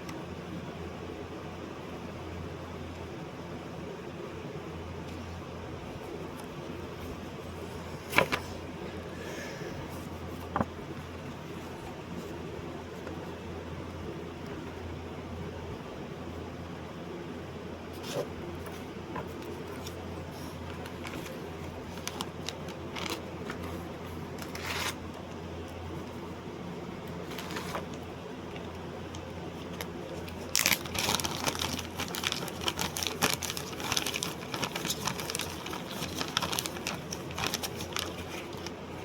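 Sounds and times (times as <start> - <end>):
steady low hum: 0.0 - 39.0
crinkling handling noise: 5.0 - 13.4, 17.9 - 26.3, 27.0 - 39.0.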